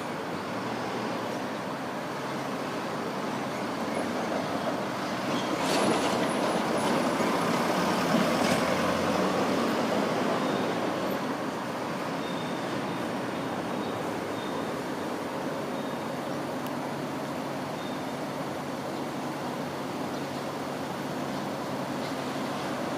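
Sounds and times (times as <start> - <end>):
streetcar rumbling: 0.0 - 22.9
wheels clicking on rails: 3.5 - 9.8.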